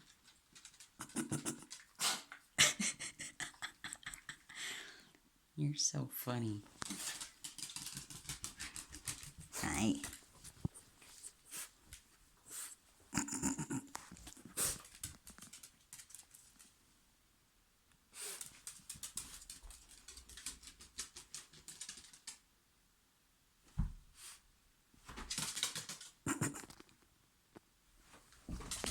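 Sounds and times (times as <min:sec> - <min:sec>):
dog claws clicking on floor: 0:00.0 - 0:02.0, 0:06.7 - 0:11.2, 0:14.0 - 0:16.8, 0:18.3 - 0:22.5, 0:25.0 - 0:27.0, 0:28.5 - 0:28.9.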